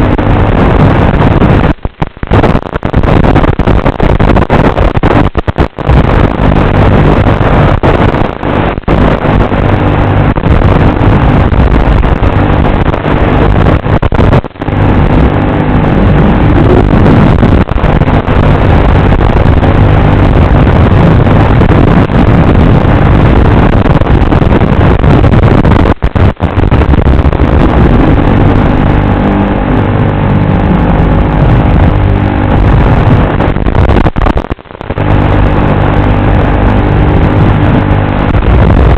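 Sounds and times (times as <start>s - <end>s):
drone propellers buzzing: 0.0s - 38.9s.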